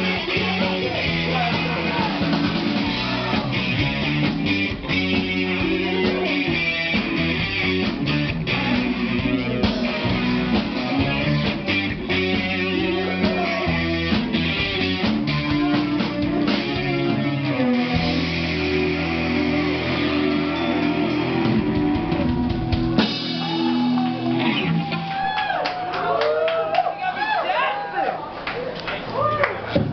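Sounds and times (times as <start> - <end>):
live rock band playing: 0.0 - 26.0
voices: 12.1 - 22.3.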